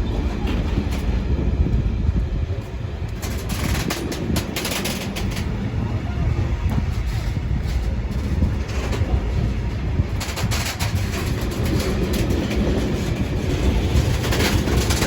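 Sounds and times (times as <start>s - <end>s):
wheels clattering over rail joints: 0.0s - 1.8s, 2.5s - 15.0s
train wagons rumbling past: 0.0s - 15.0s.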